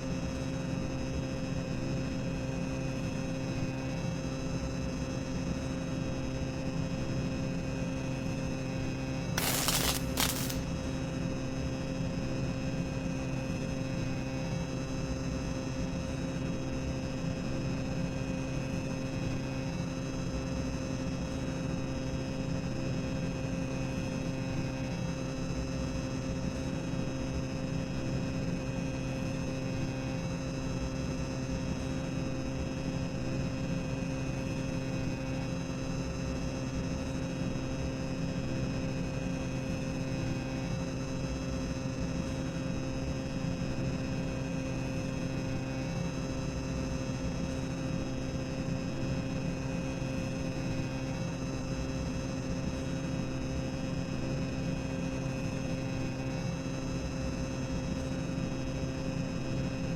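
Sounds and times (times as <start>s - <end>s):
steady hiss: 9.4s - 10.6s.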